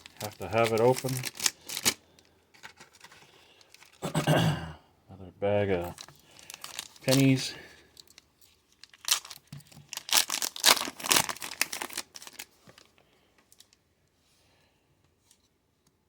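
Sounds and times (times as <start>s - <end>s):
plastic wrapper tearing and crinkling: 0.0s - 4.0s, 5.8s - 13.8s.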